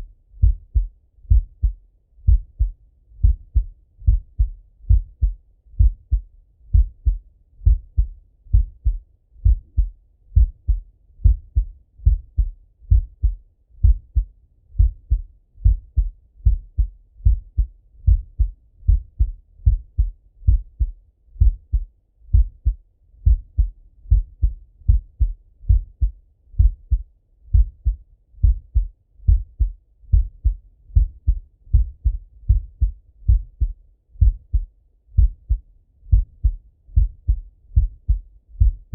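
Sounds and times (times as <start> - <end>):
heartbeat through stethoscope: 0.0 - 38.9.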